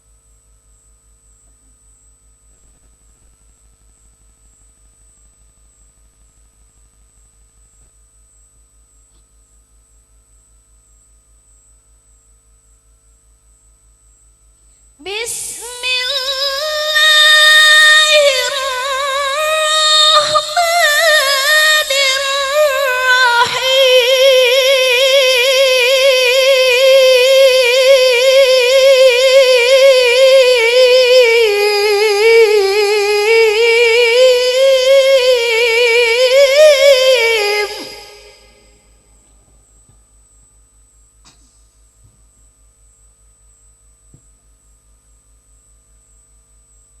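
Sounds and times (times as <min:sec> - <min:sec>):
person chanting melodic recitation: 0:15.0 - 0:38.7.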